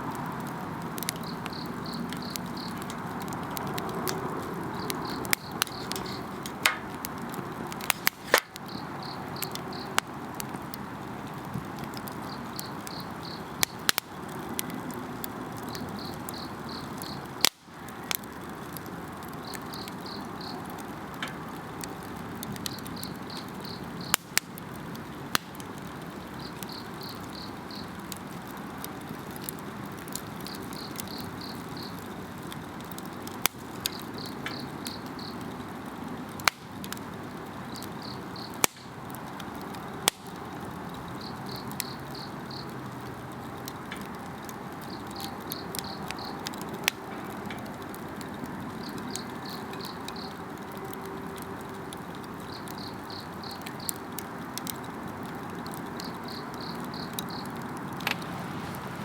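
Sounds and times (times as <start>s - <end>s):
campfire crackling and popping: 0.0s - 59.0s
insect chirping trills: 30.8s - 32.0s, 56.0s - 57.5s.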